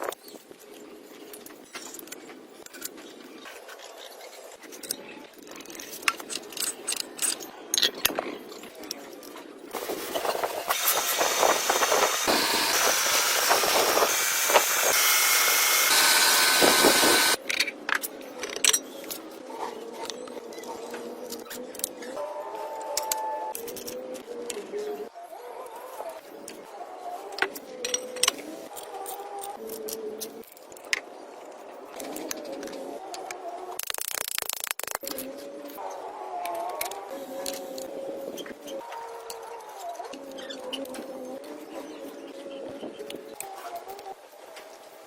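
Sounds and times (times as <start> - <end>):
loud hissing machine: 9.8 - 17.4.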